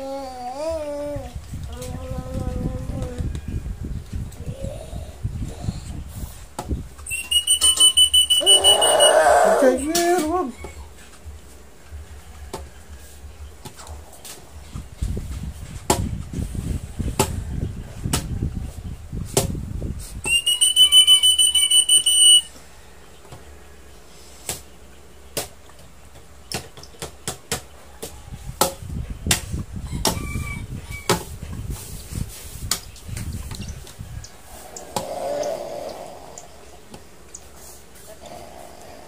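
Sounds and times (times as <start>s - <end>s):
high whistle-like tone: 7.1s - 9.2s, 20.2s - 22.5s.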